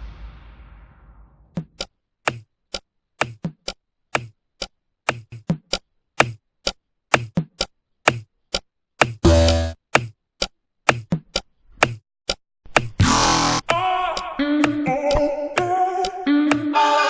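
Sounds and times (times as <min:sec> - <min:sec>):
sharp dry knocks with low thuds: 0:05.1 - 0:13.1.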